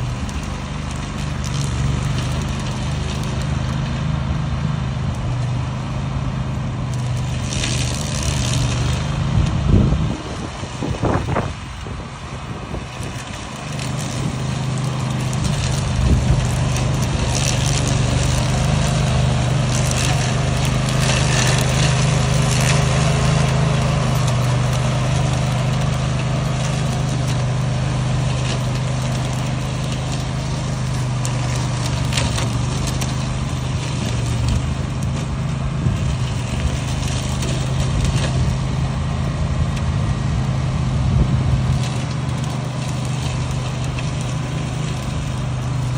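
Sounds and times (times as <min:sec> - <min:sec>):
petrol engine running: 0:00.0 - 0:45.9
crackles and knocks: 0:12.7 - 0:45.9.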